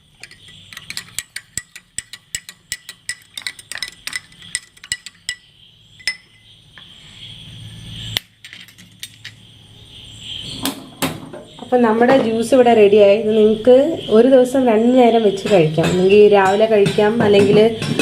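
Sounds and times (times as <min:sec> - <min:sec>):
spoon clinking against glass: 0:00.2 - 0:06.5.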